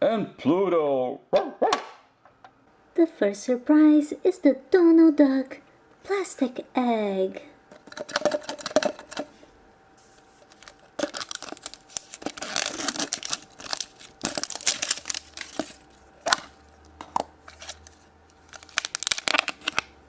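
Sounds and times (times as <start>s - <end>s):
plastic wrapping crinkling and tearing: 10.0s - 20.0s.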